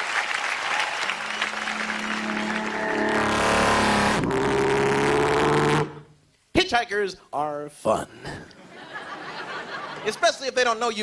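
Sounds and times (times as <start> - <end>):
audience applause: 0.0 - 4.1.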